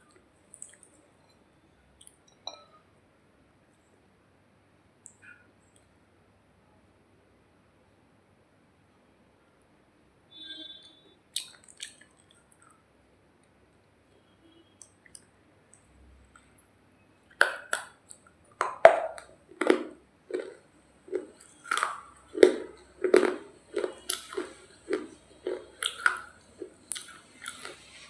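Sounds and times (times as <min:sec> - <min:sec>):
dry clay being chewed: 0:11.4 - 0:12.7, 0:17.3 - 0:28.0.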